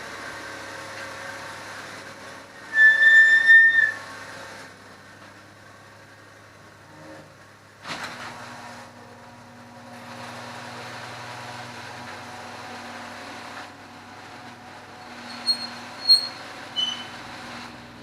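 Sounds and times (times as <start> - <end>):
steady mechanical hum: 0.0 - 18.0
short high-pitched squeaks: 2.7 - 4.0, 15.0 - 17.2.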